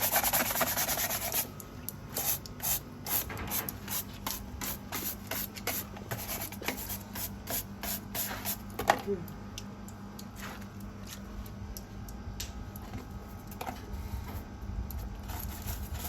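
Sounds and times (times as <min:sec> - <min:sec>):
scrubbing tortoise shell: 0:00.0 - 0:01.5, 0:15.0 - 0:16.0.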